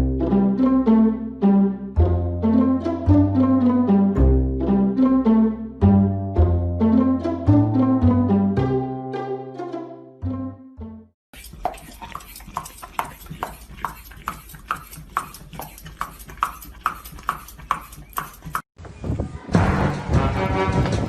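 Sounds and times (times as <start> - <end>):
music: 0.0 - 11.1, 19.4 - 21.0.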